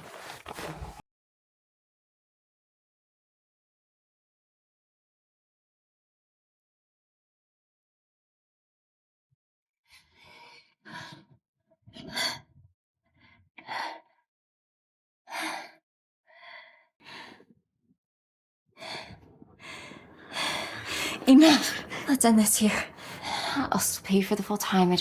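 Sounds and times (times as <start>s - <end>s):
person breathing heavily: 18.8s - 23.7s.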